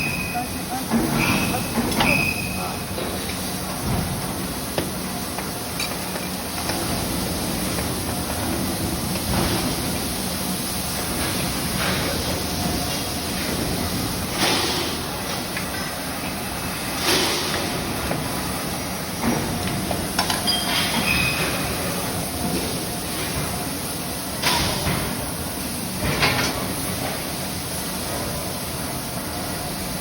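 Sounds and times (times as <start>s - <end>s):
conveyor machinery humming: 0.0s - 30.0s.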